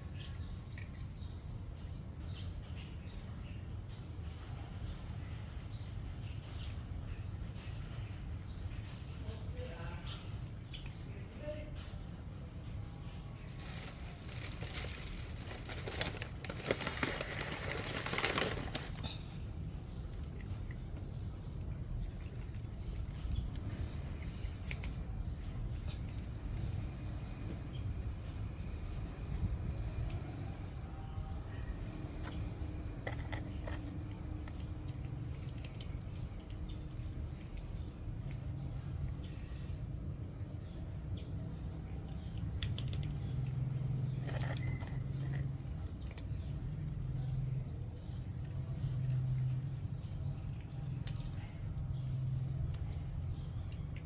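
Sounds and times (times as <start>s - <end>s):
low steady rumble: 4.1s - 54.0s
rustling noise: 13.4s - 19.1s.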